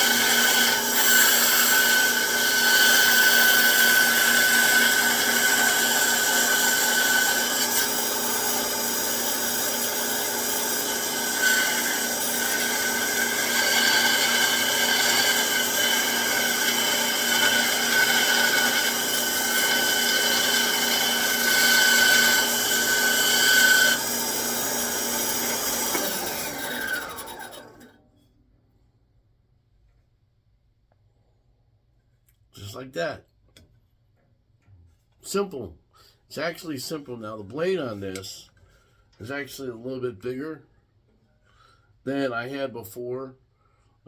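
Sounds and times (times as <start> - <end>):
band saw cutting wood: 0.0 - 27.9
saw winding down: 0.0 - 27.9.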